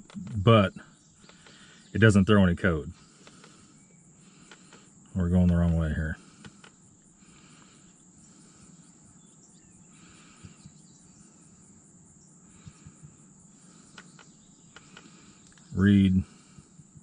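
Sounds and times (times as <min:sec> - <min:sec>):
high-pitched insect trill: 0:00.8 - 0:17.0
faint clicks: 0:01.2 - 0:01.7, 0:03.0 - 0:03.7, 0:04.4 - 0:06.8, 0:13.8 - 0:15.7.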